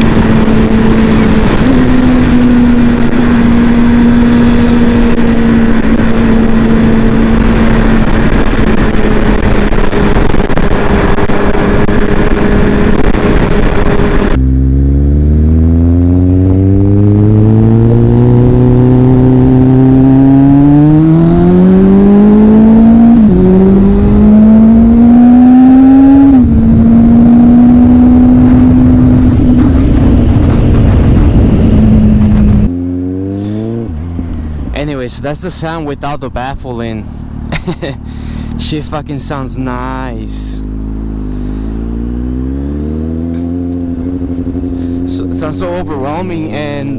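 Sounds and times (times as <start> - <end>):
heavy noise: 0.0 - 14.5
motorcycle engine revving: 0.0 - 46.9.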